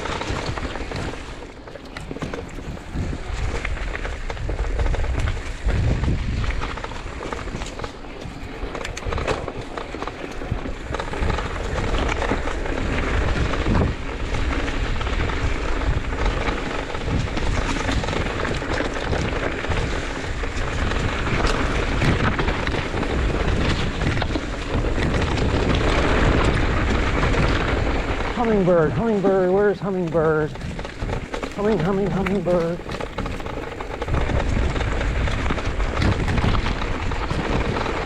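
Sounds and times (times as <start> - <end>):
wind rumble on microphone: 0.0 - 38.0
clicks and rattles: 30.2 - 38.0.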